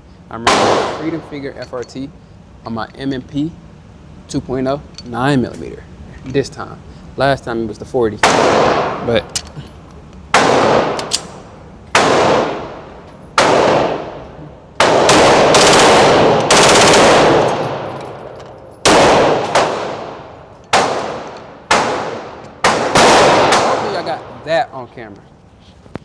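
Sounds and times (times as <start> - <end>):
pistol rapid fire: 0.4 - 1.3, 8.2 - 9.1, 10.3 - 11.3, 11.9 - 14.2, 14.8 - 24.3
pistol shots echoing: 0.4 - 1.4, 8.2 - 9.2, 10.3 - 11.3, 11.9 - 24.4.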